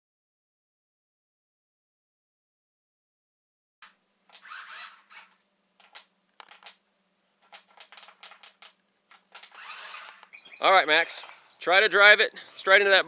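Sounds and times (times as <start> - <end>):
faint steady hum: 3.8 - 9.4.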